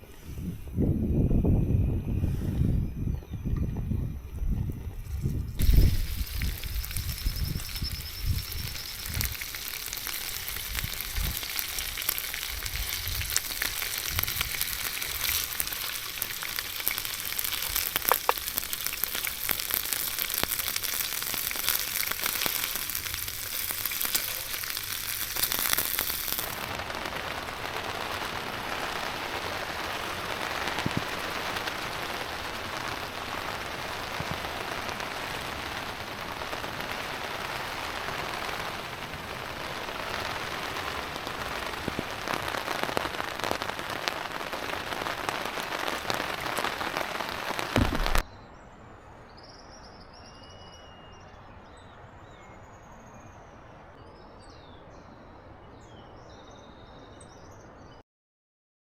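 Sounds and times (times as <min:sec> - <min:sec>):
rain falling: 0:05.6 - 0:48.2.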